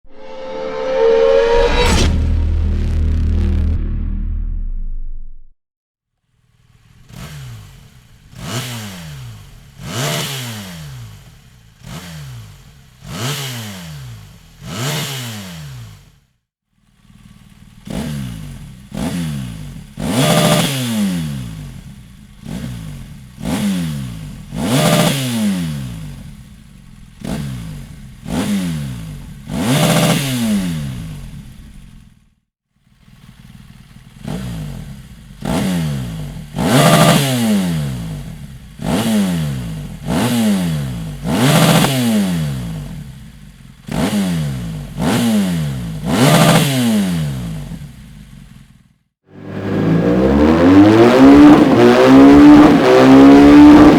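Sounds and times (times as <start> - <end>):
motorcycle engine revving: 6.3 - 53.9.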